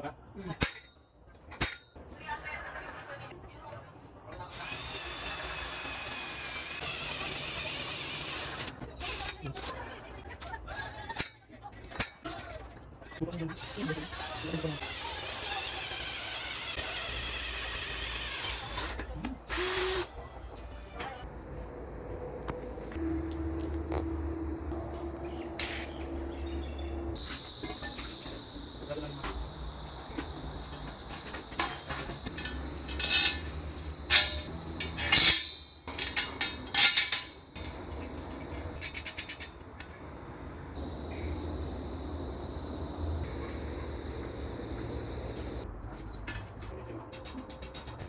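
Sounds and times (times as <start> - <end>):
high-pitched hum: 22.2 - 34.9
metal pieces clinking: 31.6 - 37.4.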